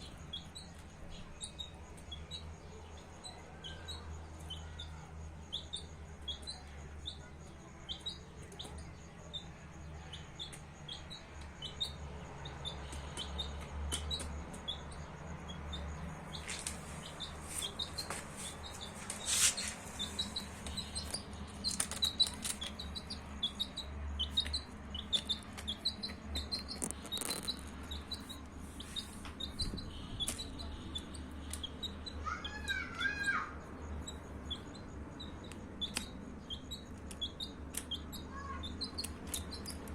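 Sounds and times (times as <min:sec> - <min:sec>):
chicks peeping: 0:00.0 - 0:39.9
sharp clicks: 0:10.4 - 0:28.5, 0:29.2 - 0:32.2, 0:34.0 - 0:39.9.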